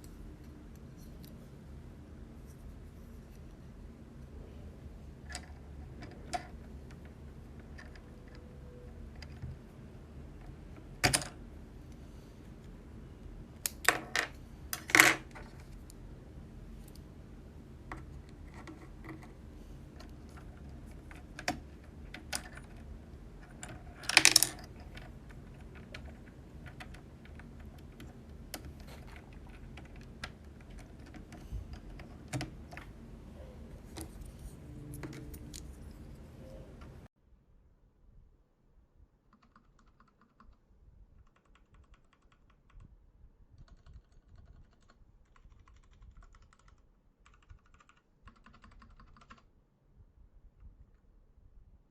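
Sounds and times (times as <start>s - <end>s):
steady low hum: 0.0s - 37.1s.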